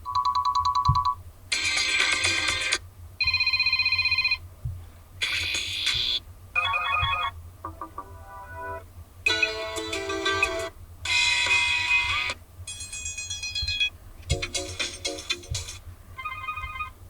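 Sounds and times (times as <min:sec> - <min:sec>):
phone ringtones: 0:03.2 - 0:04.4, 0:06.0 - 0:11.8, 0:16.2 - 0:16.9.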